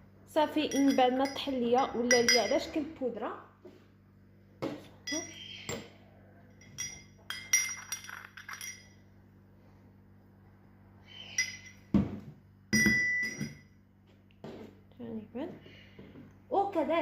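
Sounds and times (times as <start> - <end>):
utensil clinking against mortar: 0.7 - 2.7, 6.6 - 9.0, 11.3 - 11.9.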